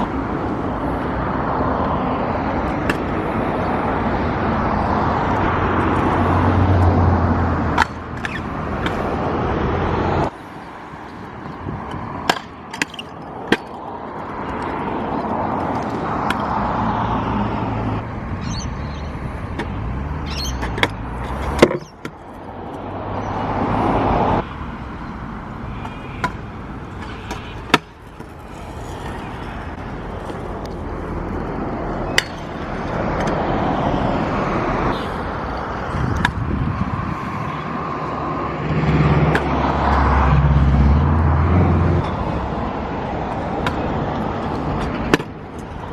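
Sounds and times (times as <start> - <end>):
scooter wheels rolling on concrete: 0.0 - 40.4, 41.5 - 45.9
scooter landing clacks: 11.9 - 13.8, 26.2 - 29.4.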